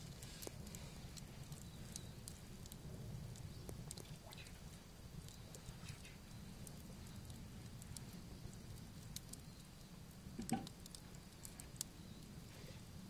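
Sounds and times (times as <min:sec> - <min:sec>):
low fire rumble: 0:00.0 - 0:13.0
wood fire crackling: 0:00.0 - 0:13.0.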